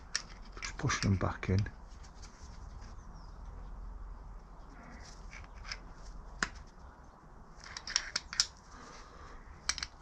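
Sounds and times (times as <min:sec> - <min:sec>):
hand tools clicking on metal: 0:07.6 - 0:08.6, 0:09.6 - 0:10.0.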